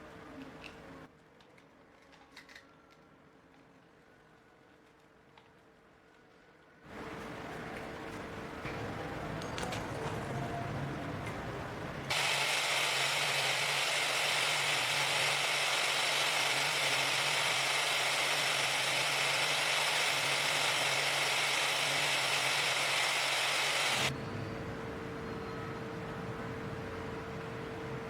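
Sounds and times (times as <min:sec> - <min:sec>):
power tool whirring: 0:12.1 - 0:24.1.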